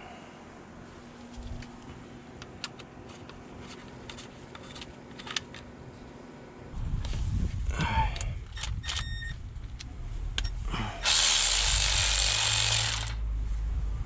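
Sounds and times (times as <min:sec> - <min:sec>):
low hum: 0:05.5 - 0:14.0
loud steady hiss: 0:11.0 - 0:13.2.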